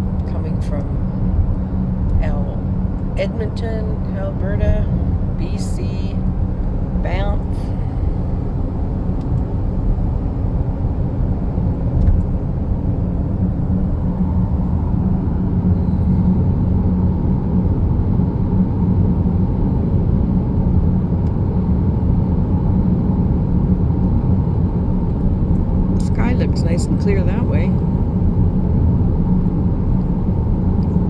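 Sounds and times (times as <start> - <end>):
car interior road rumble: 0.0 - 31.0.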